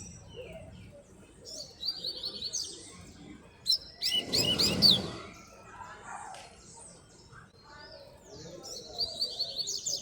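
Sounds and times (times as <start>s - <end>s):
bird singing whistled notes: 3.6s - 5.4s.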